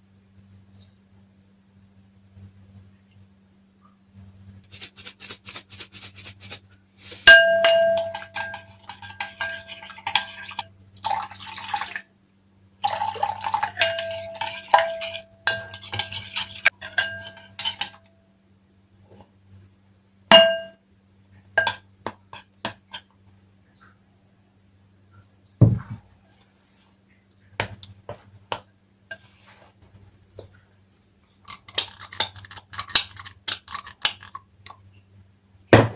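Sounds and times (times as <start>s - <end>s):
faint low hum: 0.0s - 35.9s
dishes and utensils clinking: 7.2s - 10.6s, 13.4s - 18.0s.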